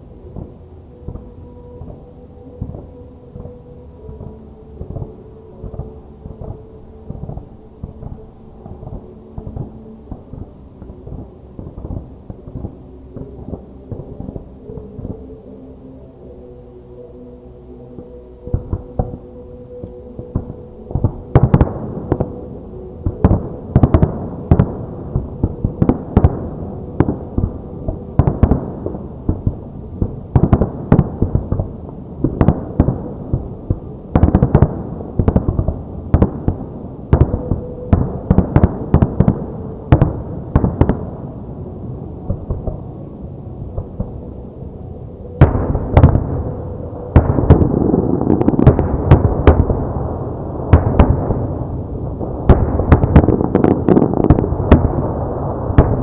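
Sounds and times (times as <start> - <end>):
fireworks bursting: 45.4 - 56.0
fireworks crackling: 45.4 - 56.0.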